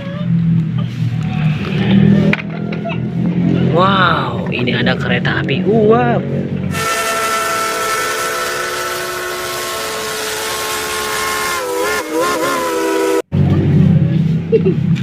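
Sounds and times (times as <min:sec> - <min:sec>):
steam locomotive whistle: 0:06.7 - 0:13.3.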